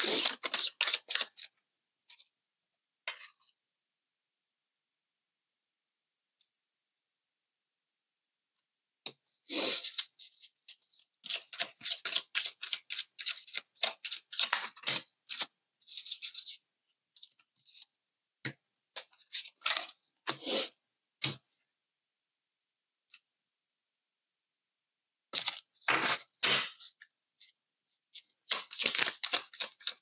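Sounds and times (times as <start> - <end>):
cards being shuffled: 0.0 - 1.5, 28.4 - 30.0.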